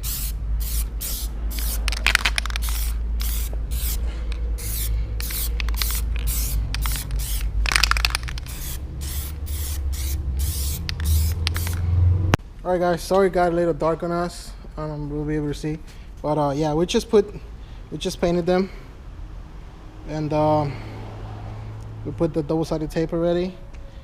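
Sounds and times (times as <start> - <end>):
aerosol can spraying: 0.0 - 4.0, 4.6 - 11.8.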